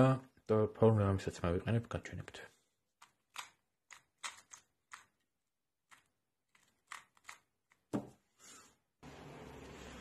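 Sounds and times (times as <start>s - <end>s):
puzzle cube plastic clicks: 3.0s - 7.9s.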